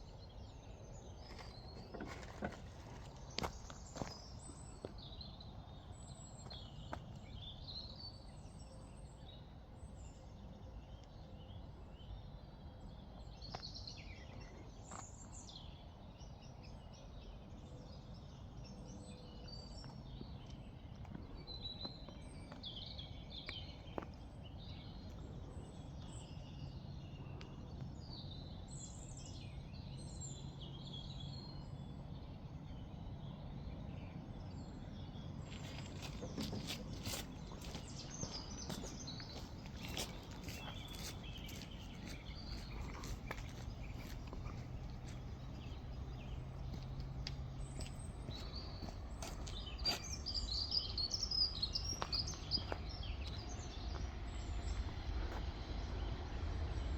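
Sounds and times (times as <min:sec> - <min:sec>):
faint outdoor background noise: 0:00.0 - 0:56.9
small birds chirping: 0:00.0 - 0:56.9.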